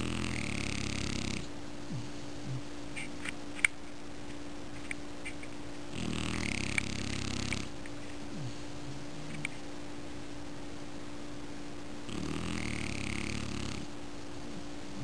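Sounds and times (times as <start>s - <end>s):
dog snoring: 0.0s - 3.0s, 5.9s - 9.6s, 12.0s - 15.0s.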